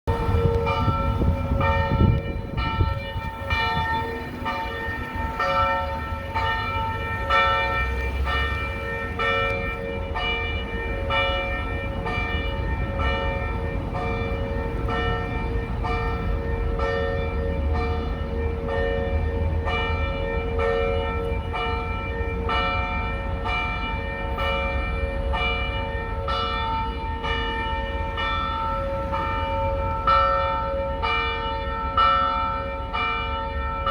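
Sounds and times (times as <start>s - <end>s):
church bell ringing: 0.1s - 33.9s.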